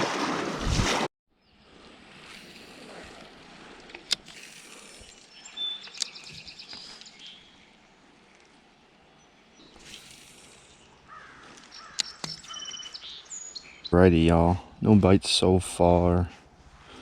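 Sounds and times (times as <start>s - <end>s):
creek flowing: 1.4s - 17.0s
bird singing: 5.0s - 7.8s, 10.6s - 15.0s
sharp clicks: 11.6s - 12.5s.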